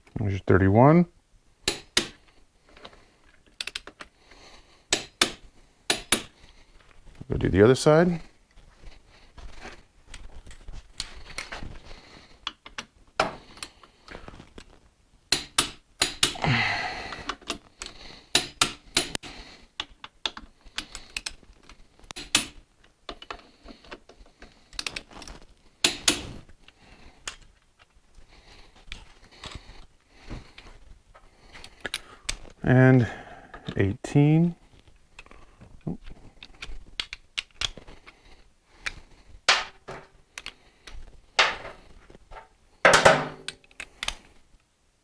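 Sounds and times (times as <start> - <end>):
wrench clicking on metal: 15.3 - 16.4.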